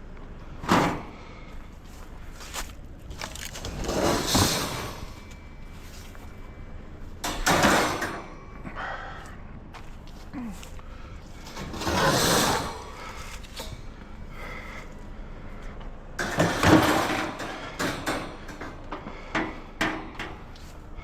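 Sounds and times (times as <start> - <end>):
scrap scraping and rattling: 1.9 - 6.4, 11.3 - 13.9, 16.2 - 18.6
metal knocks and clanks: 7.2 - 8.3, 16.2 - 20.5.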